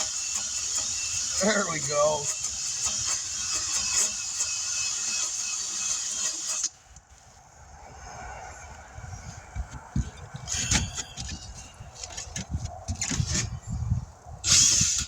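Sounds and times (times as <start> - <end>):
buffer wheel grinding rubber: 0.0 - 6.7.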